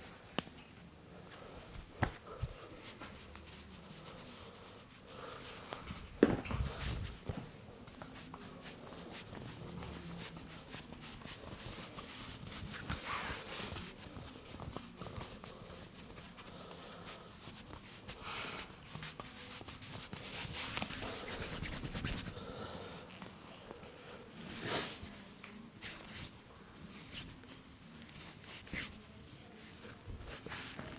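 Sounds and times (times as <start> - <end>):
hands rubbing and patting back: 1.7 - 4.1, 5.6 - 22.4.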